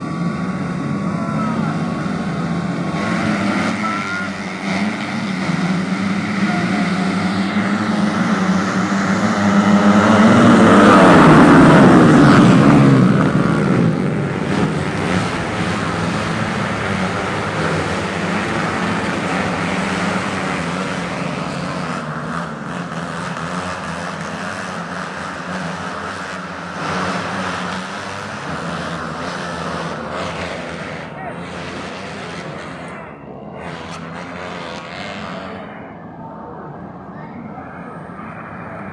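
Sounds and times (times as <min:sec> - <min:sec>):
racing motorcycle engines: 0:00.0 - 0:38.9.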